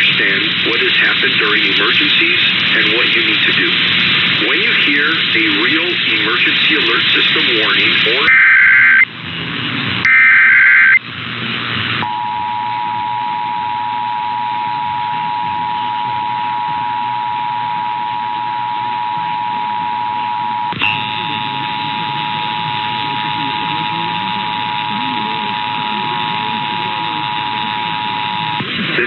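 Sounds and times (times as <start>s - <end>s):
high whine: 0.0s - 29.0s
screeching digital data burst: 10.1s - 11.0s, 20.7s - 29.0s.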